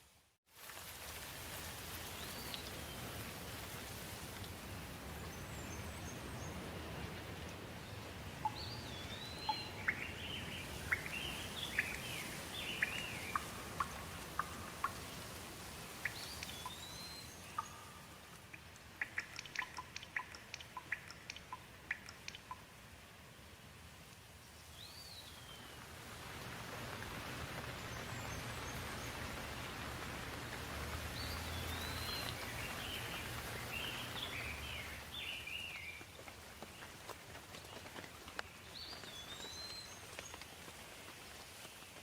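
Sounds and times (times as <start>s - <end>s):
rain hiss: 0.0s - 42.0s
bird chirps: 8.4s - 15.2s, 16.0s - 22.6s, 31.2s - 36.0s
sharp ticks: 17.6s - 22.7s.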